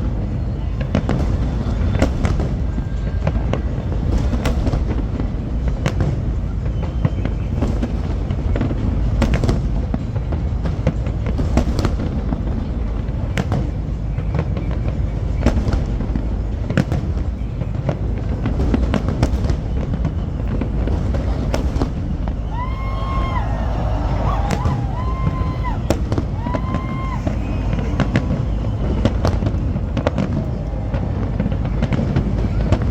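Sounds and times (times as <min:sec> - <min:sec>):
fireworks bursting: 0:18.2 - 0:30.4.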